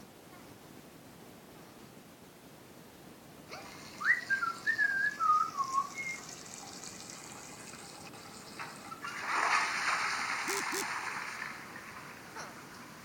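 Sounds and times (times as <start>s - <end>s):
whistled notes: 4.0s - 6.3s.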